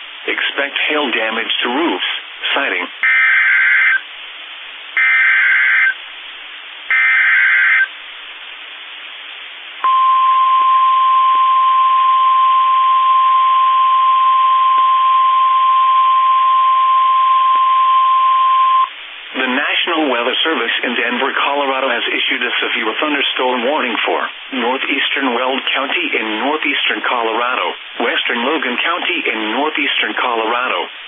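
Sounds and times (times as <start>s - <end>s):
screechy digital header bursts: 3.0s - 4.0s, 5.0s - 6.0s, 6.9s - 7.9s
steady warning alarm tone: 3.0s - 4.0s, 5.0s - 6.0s, 6.9s - 7.9s.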